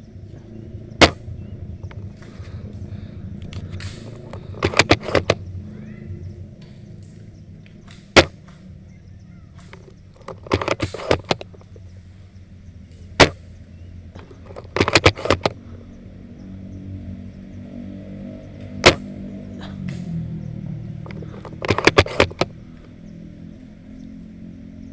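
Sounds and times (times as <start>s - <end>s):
steady low hum: 0.0s - 24.9s
airsoft gun shots: 1.0s - 1.3s, 7.9s - 8.6s, 13.2s - 13.5s, 18.8s - 19.1s.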